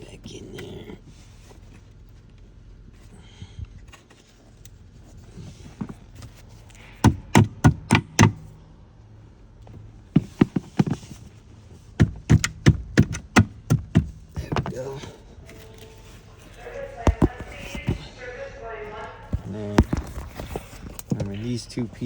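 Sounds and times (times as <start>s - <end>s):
push pin knocked into seat: 12.0s - 14.7s.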